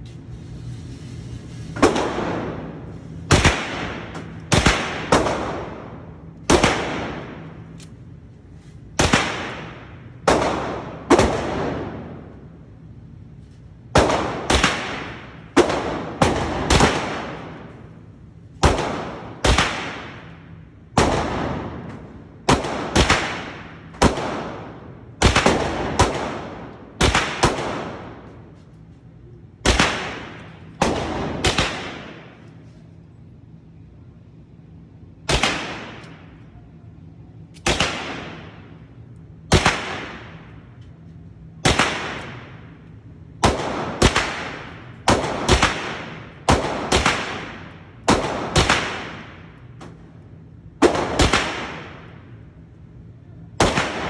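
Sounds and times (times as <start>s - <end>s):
pistol shots with echo: 1.8s - 7.8s, 9.0s - 12.4s, 14.0s - 28.6s, 29.6s - 32.6s, 35.3s - 36.4s, 37.6s - 38.8s, 39.5s - 40.6s, 41.6s - 50.2s, 50.8s - 52.5s, 53.6s - 54.0s.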